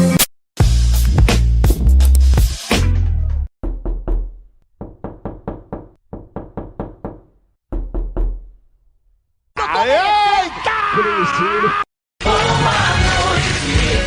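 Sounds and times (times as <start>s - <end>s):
music: 0.0s - 3.5s, 12.2s - 14.0s
rapid sharp knocking: 3.6s - 8.6s.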